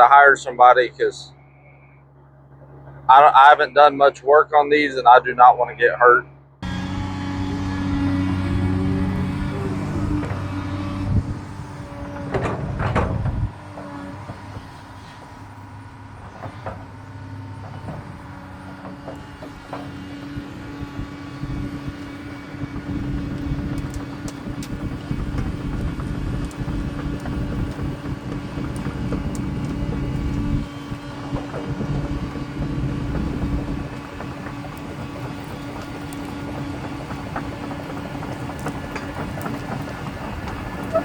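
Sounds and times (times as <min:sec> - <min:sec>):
excavator diesel engine rumble: 0:00.0 - 0:41.0
metallic clicks and squeaks: 0:40.6 - 0:41.0.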